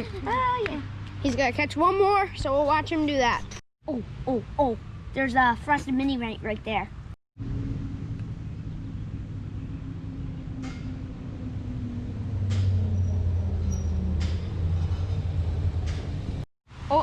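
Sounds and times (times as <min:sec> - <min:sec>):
low rumble with hum: 0:07.4 - 0:16.4.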